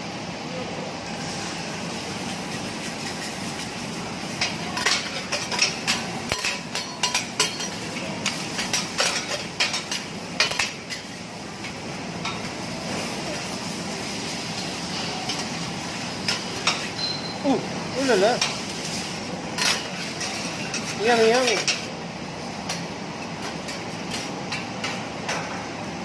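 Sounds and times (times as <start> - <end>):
food sizzling on griddle: 0.8 - 26.0
metal spatulas clanking on griddle: 4.4 - 12.5, 18.1 - 18.7, 19.6 - 21.9.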